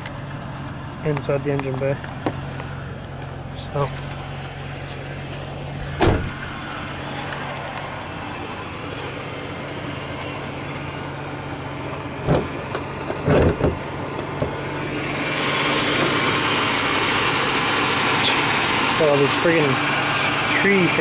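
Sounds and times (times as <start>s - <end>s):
car engine idling: 0.0s - 21.0s
thump: 5.9s - 6.4s
car hood clunks: 5.9s - 6.5s, 12.2s - 14.6s.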